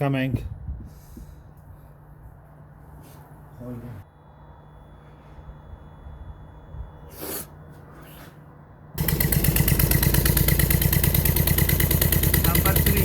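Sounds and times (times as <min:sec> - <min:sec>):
engine chugging: 0:09.0 - 0:13.0.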